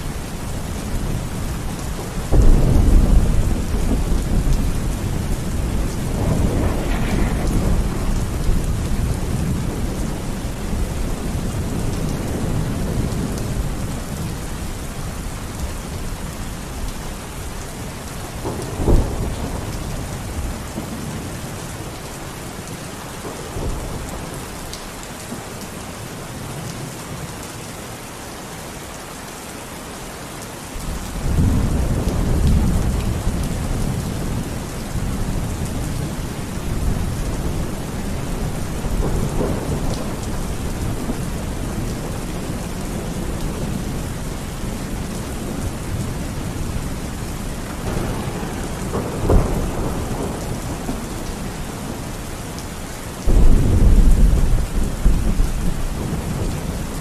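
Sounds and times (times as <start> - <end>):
rain pouring: 0.0 - 57.0
thunder rumbling: 0.6 - 14.3, 30.9 - 52.5, 53.2 - 57.0
sharp thunder crack: 2.3 - 10.0.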